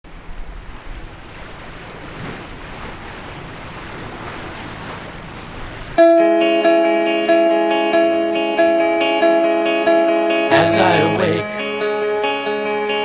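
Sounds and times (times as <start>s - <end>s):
wind: 0.0s - 6.0s
ocean waves washing: 0.1s - 6.1s
electric guitar chord: 6.0s - 13.0s.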